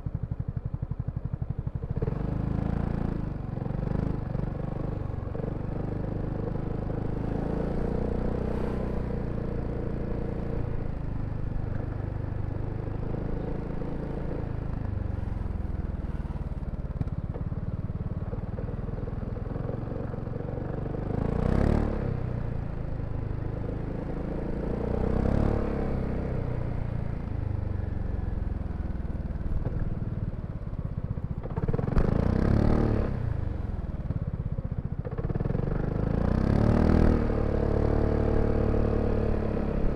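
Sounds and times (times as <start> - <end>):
scooter engine running: 0.0 - 39.9.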